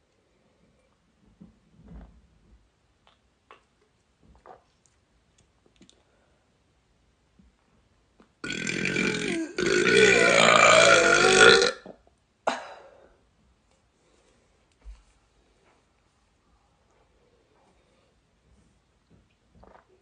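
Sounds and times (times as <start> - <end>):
woman belching: 8.4 - 12.0.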